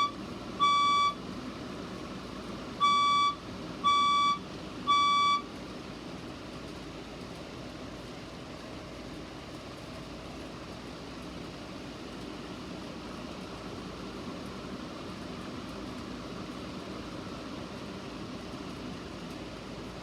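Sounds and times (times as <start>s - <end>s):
fire alarm beep: 0.0s - 1.2s, 2.8s - 5.5s
steady background hum: 0.0s - 20.0s.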